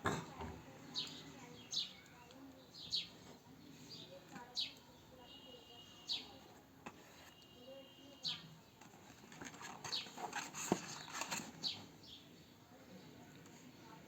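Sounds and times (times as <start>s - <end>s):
bird chirping: 0.9s - 6.4s, 7.1s - 8.8s
rustling and clicking handling: 8.7s - 12.0s.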